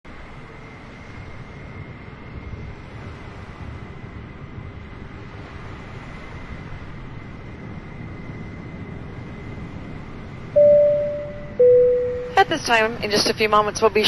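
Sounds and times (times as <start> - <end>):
faint high whine: 10.6 - 12.9.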